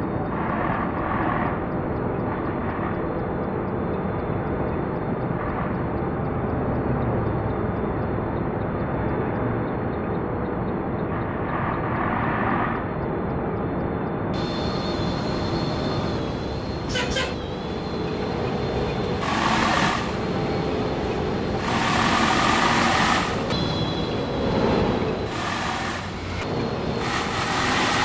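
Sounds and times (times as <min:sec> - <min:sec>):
vehicle driving at road speed: 0:04.6 - 0:28.0
hiss: 0:14.4 - 0:28.0.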